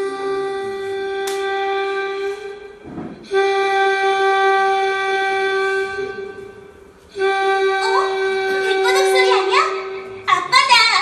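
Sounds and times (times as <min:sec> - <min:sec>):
ship's horn blasts: 0:00.0 - 0:10.2.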